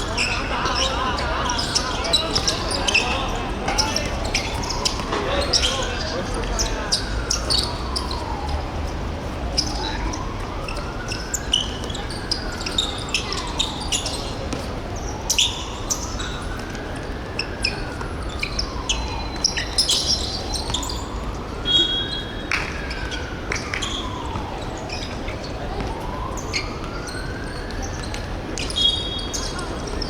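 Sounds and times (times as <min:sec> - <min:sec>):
shoes squeaking on court: 0:00.0 - 0:08.4.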